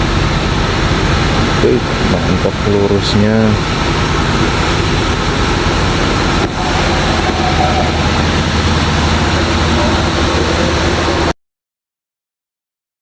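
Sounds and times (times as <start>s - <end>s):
sawmill saw cutting timber: 1.4s - 11.3s.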